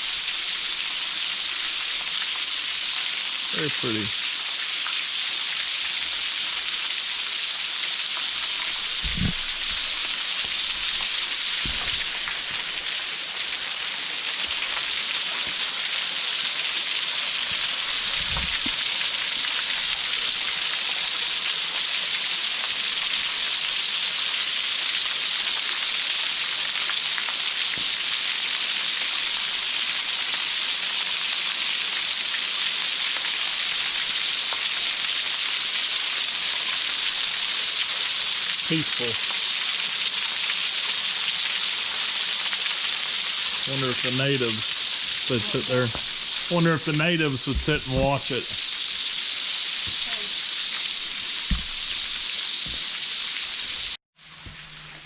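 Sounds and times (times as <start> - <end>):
waterfall splashing on rock: 0.0 - 55.0
soft low thumps: 8.7 - 12.8, 18.0 - 18.7, 47.5 - 48.6, 51.5 - 52.8.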